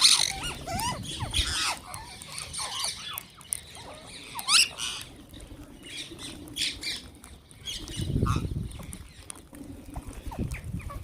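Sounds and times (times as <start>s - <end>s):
parrots squawking: 0.0s - 5.2s, 7.7s - 8.6s.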